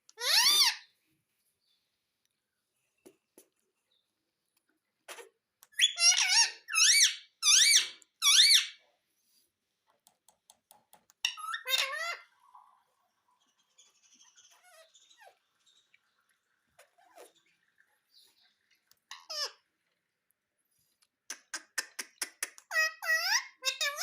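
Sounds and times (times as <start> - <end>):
parakeet calling: 0.2 - 0.9, 5.1 - 8.8, 11.2 - 12.3, 19.1 - 19.6, 21.4 - 24.0.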